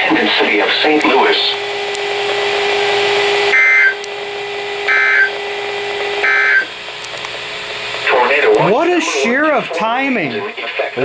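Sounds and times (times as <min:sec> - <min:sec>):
two-tone digital screeches: 0:00.0 - 0:10.4
steady hum: 0:00.0 - 0:11.0.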